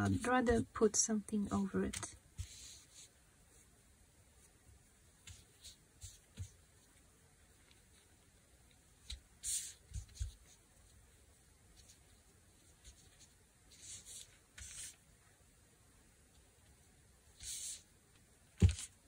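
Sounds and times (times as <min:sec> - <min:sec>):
fabric and paper rustling: 0:01.5 - 0:03.6, 0:05.2 - 0:11.0, 0:11.7 - 0:15.0, 0:18.6 - 0:19.0.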